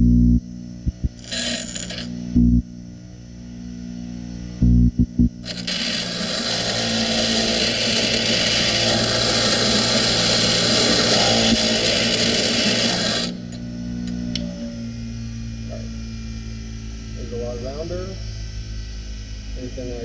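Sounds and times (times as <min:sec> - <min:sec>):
power grinder grinding metal: 0:01.2 - 0:02.1, 0:05.4 - 0:14.4.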